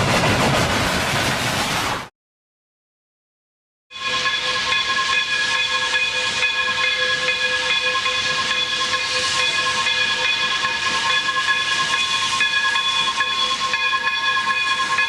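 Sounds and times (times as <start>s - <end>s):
steam locomotive whistle: 3.9s - 15.0s
steam hiss: 4.1s - 15.0s.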